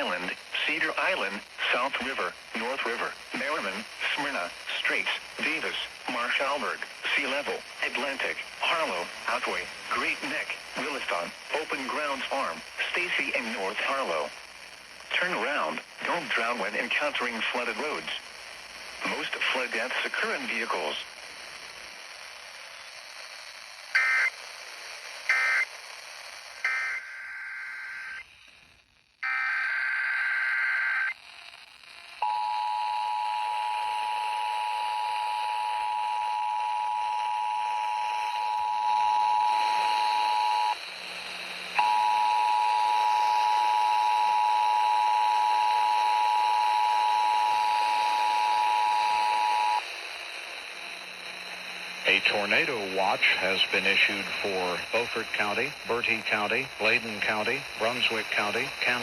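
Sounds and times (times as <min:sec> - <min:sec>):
screeching digital data bursts: 0:26.6 - 0:28.4, 0:29.2 - 0:32.2.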